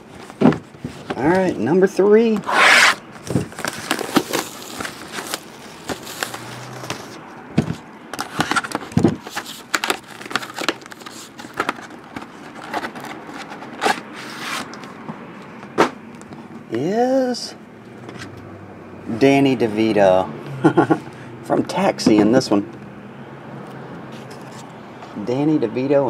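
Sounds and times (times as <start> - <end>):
packaging crackling and scraping: 2.4 - 14.8.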